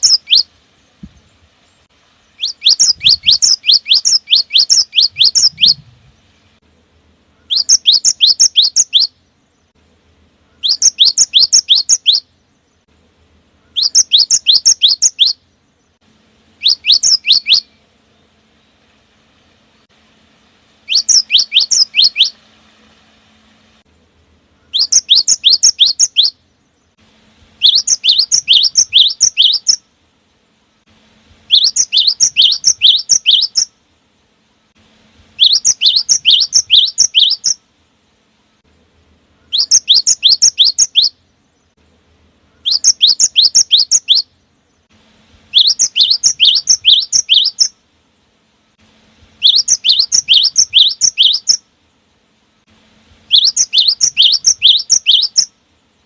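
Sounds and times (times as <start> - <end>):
bird singing whistled phrases: 0.0 - 0.5, 2.4 - 5.8, 7.4 - 9.2, 10.5 - 12.3, 13.6 - 15.4, 16.6 - 17.8, 20.8 - 22.4, 24.6 - 26.4, 27.6 - 29.8, 31.5 - 33.7, 35.4 - 37.6, 39.4 - 41.2, 42.5 - 44.3, 45.5 - 47.8, 49.4 - 51.6, 53.3 - 55.5.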